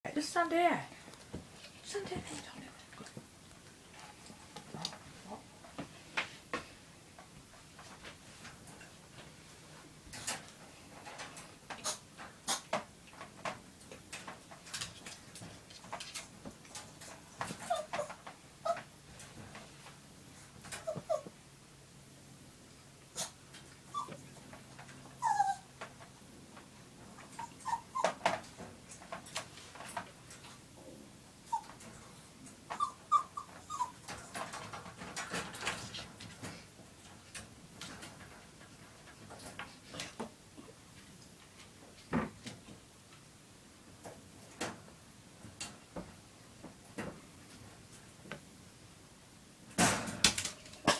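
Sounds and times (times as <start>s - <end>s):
small dog whimpering: 17.6s - 18.9s, 20.8s - 21.3s, 23.9s - 24.4s, 25.2s - 25.7s, 27.2s - 28.2s, 31.5s - 31.8s, 32.7s - 34.3s.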